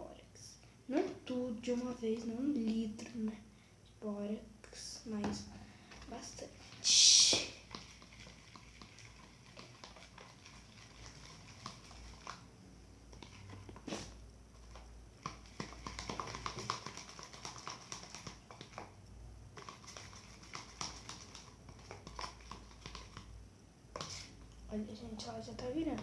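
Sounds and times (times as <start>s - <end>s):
faint clicks and taps: 1.0s - 3.4s, 13.1s - 13.9s, 14.6s - 26.0s.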